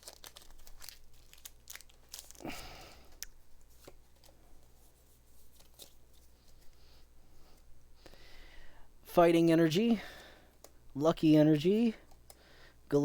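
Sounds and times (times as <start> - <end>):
foil wrapper crinkling: 0.0 - 6.3
trading cards rustling: 0.0 - 6.8.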